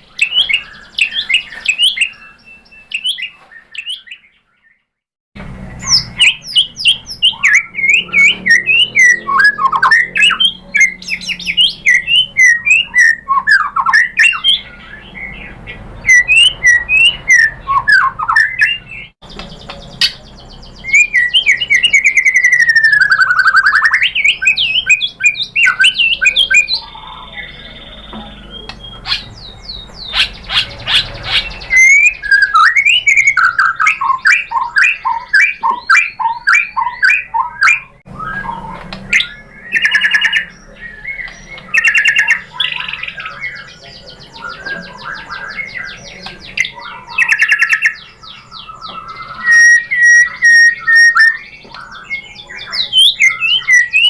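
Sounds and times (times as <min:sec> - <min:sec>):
bird singing whistles and trills: 0:00.0 - 0:04.9, 0:05.7 - 0:54.0
long sliding bird whistle: 0:31.6 - 0:42.6, 0:49.2 - 0:51.5.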